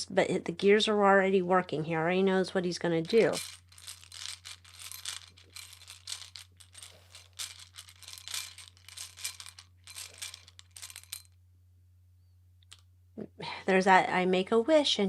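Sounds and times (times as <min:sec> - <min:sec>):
cards being shuffled: 0:03.0 - 0:11.3.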